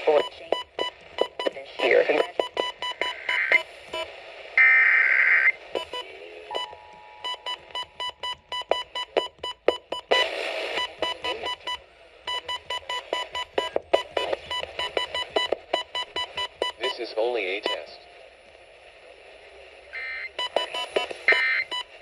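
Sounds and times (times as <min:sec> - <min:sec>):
short high beeps: 0:05.8 - 0:10.2.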